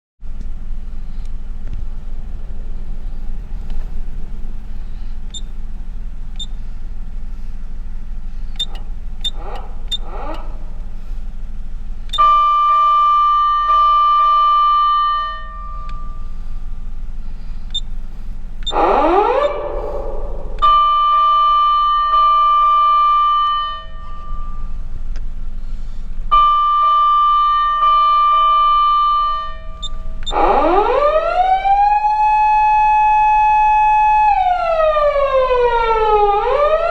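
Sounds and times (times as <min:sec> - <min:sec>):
low engine rumble: 0:00.2 - 0:36.9
fire engine siren tones: 0:08.6 - 0:11.0, 0:11.8 - 0:16.8, 0:18.6 - 0:24.9, 0:26.2 - 0:36.9.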